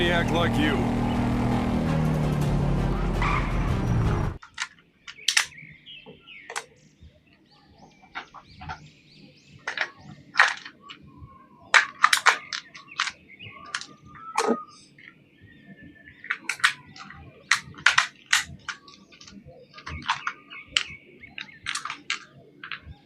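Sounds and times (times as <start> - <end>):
loud soundtrack music: 0.0 - 4.4.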